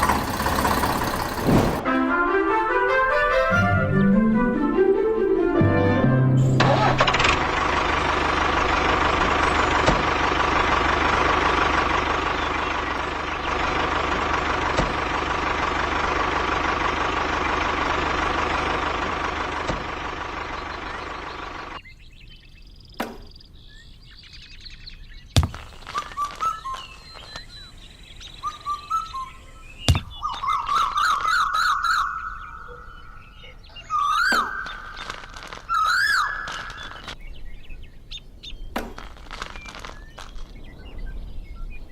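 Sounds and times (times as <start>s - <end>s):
loud steady humming noise: 0.0s - 1.8s, 6.6s - 21.8s
bird chirps: 19.5s - 41.9s
sharp knocks: 23.0s - 23.4s, 25.4s - 26.1s, 29.9s - 30.2s, 38.8s - 39.1s.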